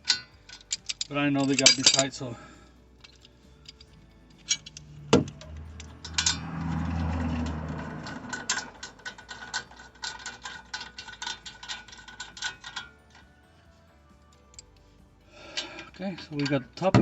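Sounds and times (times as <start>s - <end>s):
ratchet wrench clicking: 0.0s - 2.1s, 3.0s - 13.2s.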